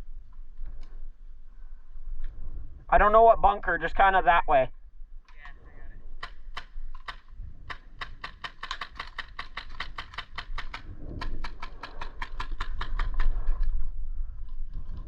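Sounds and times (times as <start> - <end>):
airsoft rifle firing clicks: 6.2 - 13.4.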